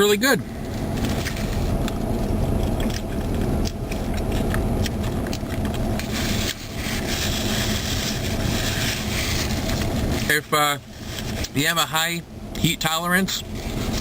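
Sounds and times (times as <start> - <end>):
car engine running inside cabin: 0.0 - 14.0.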